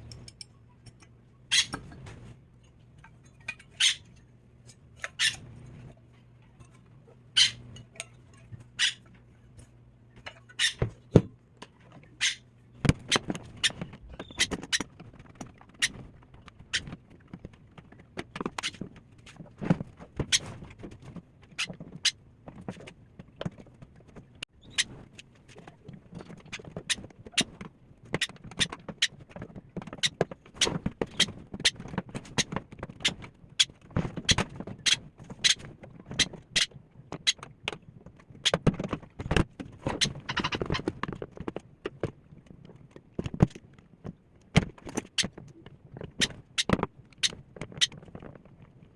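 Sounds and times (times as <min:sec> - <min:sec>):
tools clicking and clattering: 0:00.0 - 0:01.9.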